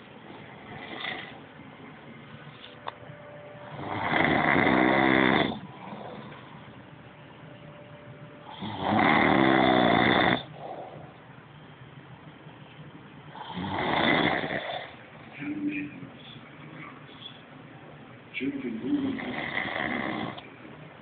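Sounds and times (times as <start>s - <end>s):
man snoring loudly: 0.5s - 1.4s, 3.7s - 6.3s, 8.5s - 10.5s, 13.3s - 15.0s, 19.0s - 20.4s.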